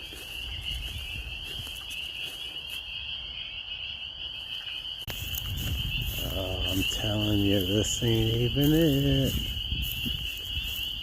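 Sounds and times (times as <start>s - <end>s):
spring peepers chorus: 0.0s - 11.0s.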